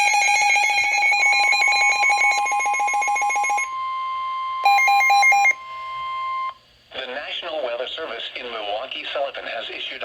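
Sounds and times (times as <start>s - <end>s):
rapidly pulsing alarm: 0.0s - 3.8s, 4.6s - 6.5s
steady high tone: 0.0s - 3.8s.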